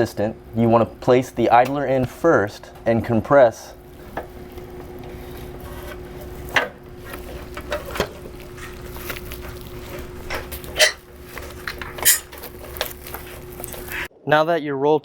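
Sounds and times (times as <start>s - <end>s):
constant hum: 0.0s - 14.1s.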